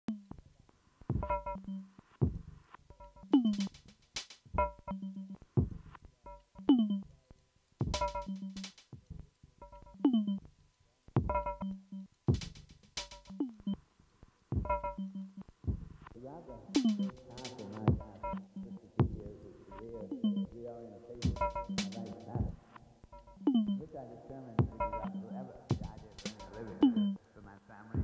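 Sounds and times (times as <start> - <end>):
electronic kick drum: 1.1 - 3.8, 4.5 - 6.9, 7.8 - 10.2, 11.2 - 13.4, 14.5 - 19.3, 21.2 - 22.6, 24.6 - 27.1
bell-like percussion tones: 1.2 - 1.8, 3.0 - 3.8, 4.6 - 5.4, 6.3 - 7.1, 7.9 - 8.8, 9.6 - 10.4, 11.2 - 12.1, 13.0 - 13.6, 14.7 - 15.4, 16.4 - 18.8, 19.7 - 20.5, 21.2 - 22.5, 23.2 - 23.9, 24.6 - 27.2
hi-hat hits: 2.2 - 4.8, 7.8 - 9.0, 12.3 - 13.4, 15.7 - 18.2, 21.2 - 22.5, 25.7 - 26.8.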